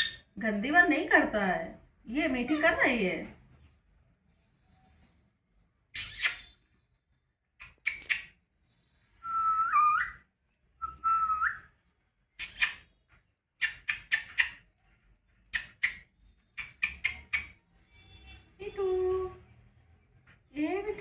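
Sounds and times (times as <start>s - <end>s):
parrot whistling: 0.0s - 0.2s, 9.2s - 10.2s, 10.8s - 11.6s
parrot squawking: 0.0s - 0.3s.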